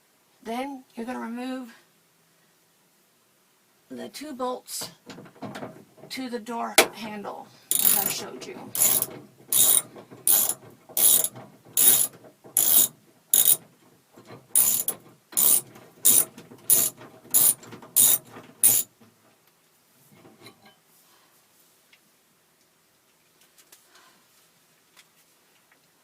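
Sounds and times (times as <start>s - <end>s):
ratchet wrench clicking: 7.7s - 13.6s, 14.6s - 18.9s.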